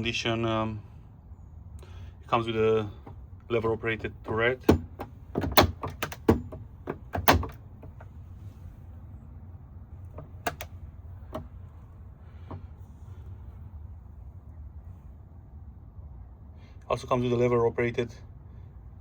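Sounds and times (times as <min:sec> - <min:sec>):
lathe turret clicks and knocks: 0:04.0 - 0:08.1, 0:10.1 - 0:11.5.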